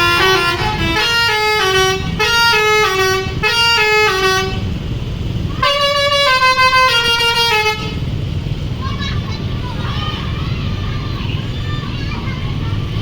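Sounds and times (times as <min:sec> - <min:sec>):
musical bus air horn tune: 0:00.0 - 0:04.8, 0:05.6 - 0:08.1
bus engine rumble: 0:00.0 - 0:13.0.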